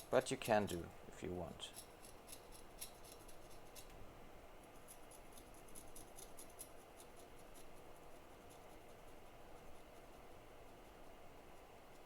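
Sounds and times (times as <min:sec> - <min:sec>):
small hand tool scraping: 0:01.7 - 0:03.9.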